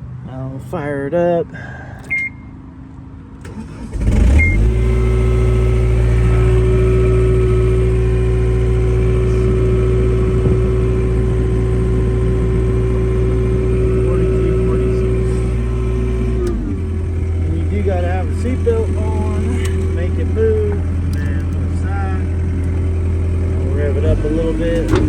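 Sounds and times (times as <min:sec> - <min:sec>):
short high beep: 0:02.0 - 0:02.5, 0:04.4 - 0:04.6
diesel engine cranking and idling: 0:03.3 - 0:25.0.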